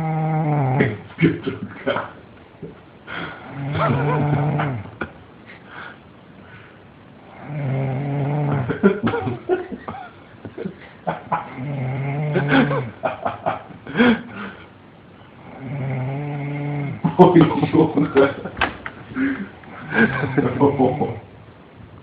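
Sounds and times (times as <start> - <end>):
person snoring loudly: 0.0 - 1.0, 3.2 - 4.9, 7.2 - 8.8, 11.5 - 12.9, 15.4 - 17.0
person laughing: 3.6 - 5.9, 8.7 - 11.6, 12.4 - 14.6, 17.1 - 21.3.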